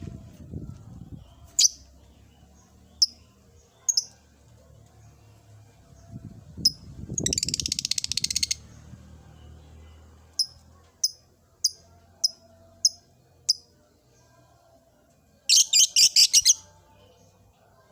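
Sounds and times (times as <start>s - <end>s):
lovebird chirps: 2.9s - 4.2s, 6.6s - 8.6s, 15.5s - 16.7s
bird chattering trill: 15.5s - 16.6s.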